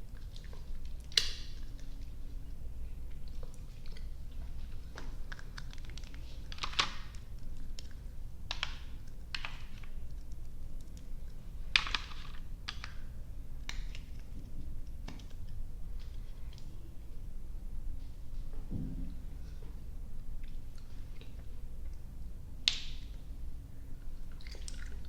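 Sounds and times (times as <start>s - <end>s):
chewing sticky candy: 0.0s - 16.8s, 24.1s - 25.0s.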